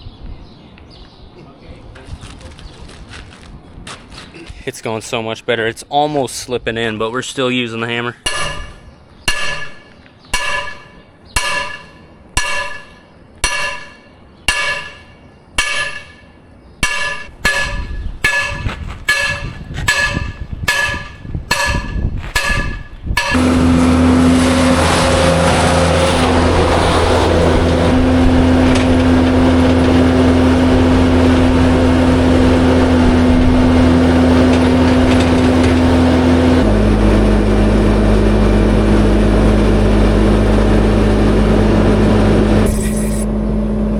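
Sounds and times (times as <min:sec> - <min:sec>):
sledgehammer striking steel shaft: 0:08.2 - 0:26.4
vehicle engine running: 0:23.2 - 0:43.9.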